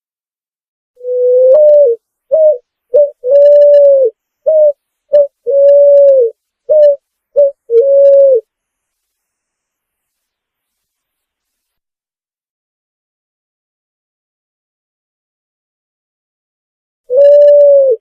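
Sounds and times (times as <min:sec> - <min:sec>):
pigeon cooing: 0:01.0 - 0:08.4, 0:17.1 - 0:18.0.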